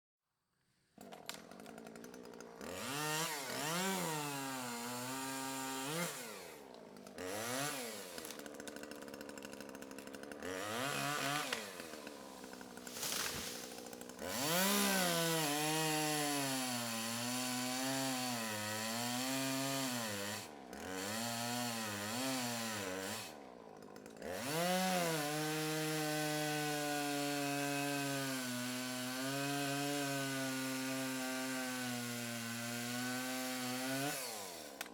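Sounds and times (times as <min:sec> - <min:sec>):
chainsaw revving and cutting: 0:01.0 - 0:34.9.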